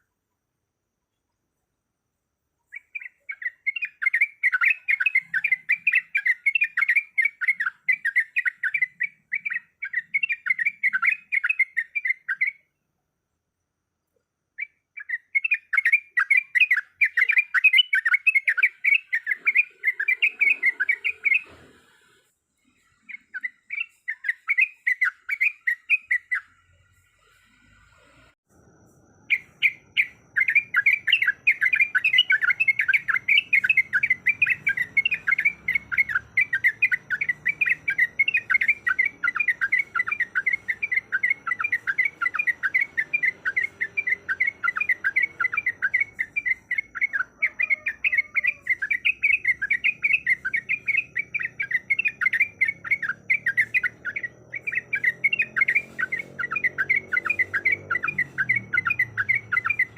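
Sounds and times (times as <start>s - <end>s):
bulbul chattering call: 29.3s - 59.9s.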